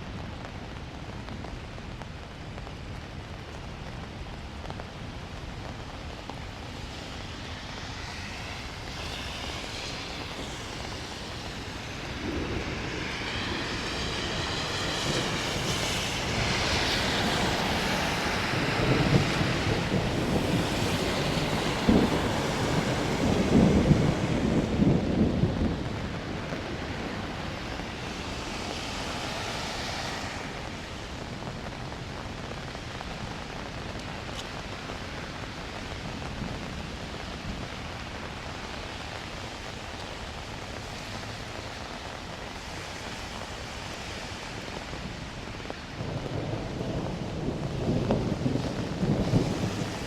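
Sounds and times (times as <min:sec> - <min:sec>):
steady rain hiss: 0:00.0 - 0:50.0
thunder rumbling: 0:06.0 - 0:38.4, 0:45.0 - 0:50.0.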